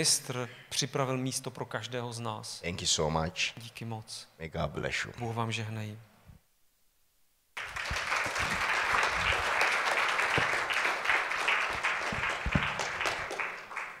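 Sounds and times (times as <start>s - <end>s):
audience applauding: 7.6s - 14.0s.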